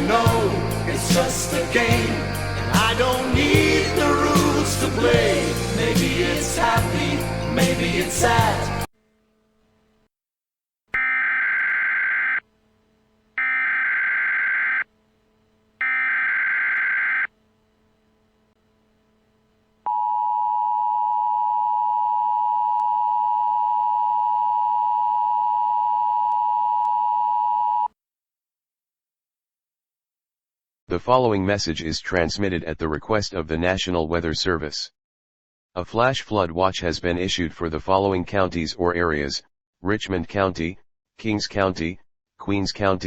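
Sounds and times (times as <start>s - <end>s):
screechy digital data bursts: 11.0s - 12.4s, 13.4s - 14.9s, 15.8s - 17.3s.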